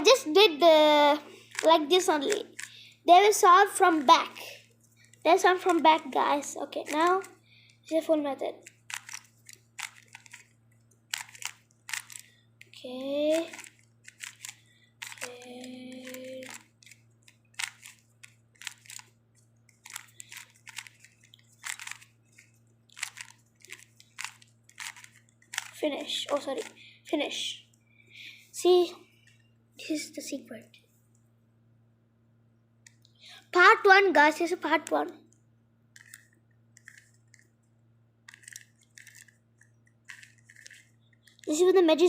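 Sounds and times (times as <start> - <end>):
puzzle cube plastic clicks: 1.4 - 2.9, 6.7 - 7.4, 8.6 - 26.8, 36.0 - 37.5, 38.3 - 41.6.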